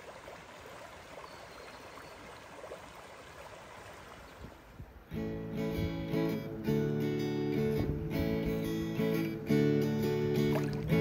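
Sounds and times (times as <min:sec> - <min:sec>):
stream water rushing: 0:00.0 - 0:05.2, 0:09.0 - 0:11.0
strummed acoustic guitar music: 0:05.1 - 0:11.0.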